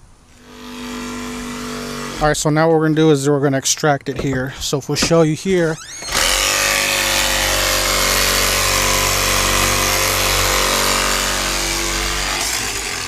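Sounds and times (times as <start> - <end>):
power cutting tool running: 0.4 - 2.3, 5.8 - 13.0.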